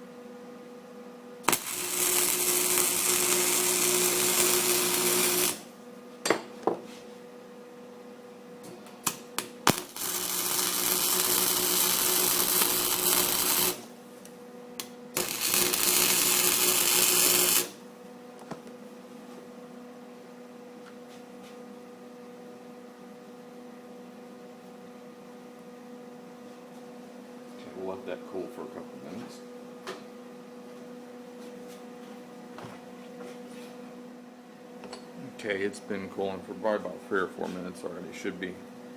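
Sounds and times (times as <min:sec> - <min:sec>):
arc welder crackling hiss: 0:01.4 - 0:05.8, 0:08.8 - 0:17.9
welder humming: 0:01.4 - 0:05.8, 0:08.6 - 0:17.9.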